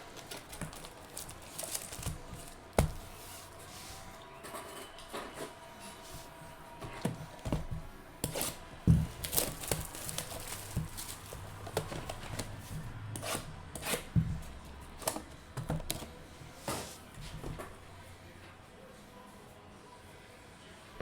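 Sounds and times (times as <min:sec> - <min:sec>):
card wrappers tearing and crinkling: 0:00.0 - 0:02.8, 0:09.2 - 0:12.6.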